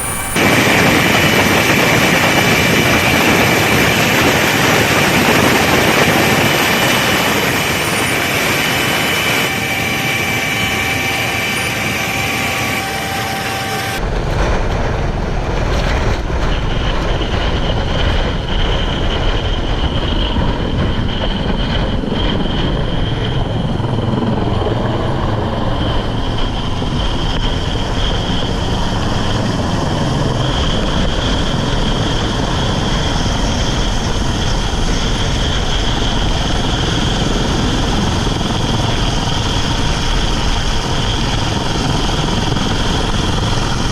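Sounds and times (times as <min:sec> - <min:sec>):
deep engine rumble: 0:00.0 - 0:43.9
high whine: 0:00.0 - 0:43.9
steady pitched engine hum: 0:00.0 - 0:43.9.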